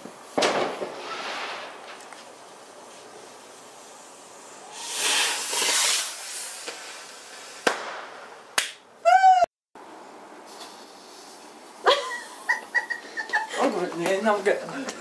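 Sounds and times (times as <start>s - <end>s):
firework rushing hiss: 0.0s - 8.6s, 10.0s - 12.9s
firework cracks: 0.0s - 8.9s, 10.5s - 11.5s
high-pitched cry: 9.0s - 9.5s.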